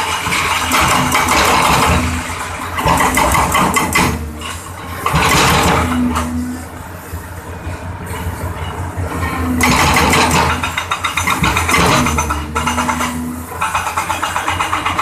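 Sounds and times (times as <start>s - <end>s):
hydraulic breaker hammering concrete: 0.0s - 6.4s, 9.4s - 15.0s
diesel engine humming: 0.0s - 15.0s.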